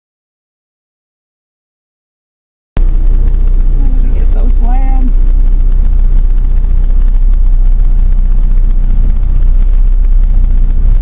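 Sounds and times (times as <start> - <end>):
vehicle low rumble: 2.8 - 11.0.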